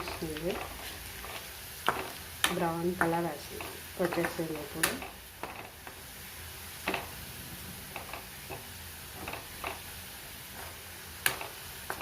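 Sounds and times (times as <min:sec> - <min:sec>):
food sizzling in oil: 0:00.0 - 0:12.0
stirring clicks against pan: 0:11.2 - 0:12.0.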